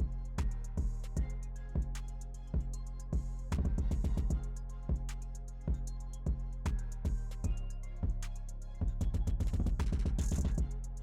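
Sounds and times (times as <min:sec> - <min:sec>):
kick drum beat: 0:00.0 - 0:02.0, 0:02.6 - 0:05.1, 0:05.7 - 0:08.2, 0:08.8 - 0:10.8
hi-hat ticks: 0:00.0 - 0:11.0
music with deep bass: 0:00.0 - 0:11.0.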